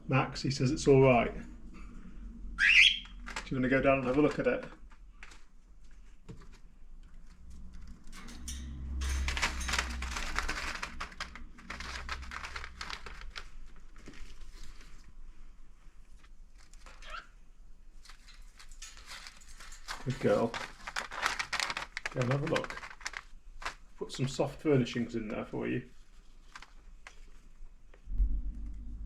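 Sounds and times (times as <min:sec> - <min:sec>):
paper rustling: 0:03.1 - 0:08.1, 0:09.1 - 0:17.2, 0:18.0 - 0:27.6.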